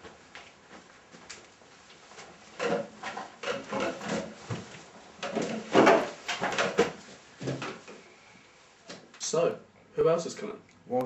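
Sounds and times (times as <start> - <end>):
wooden cupboard knocks and scrapes: 5.3 - 7.8.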